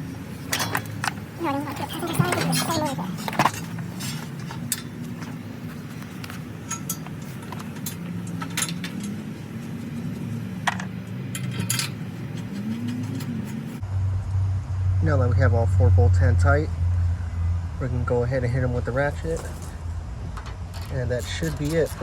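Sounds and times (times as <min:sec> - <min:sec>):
steady low hum: 0:00.0 - 0:22.0
metallic clinks of bolts: 0:06.3 - 0:13.3.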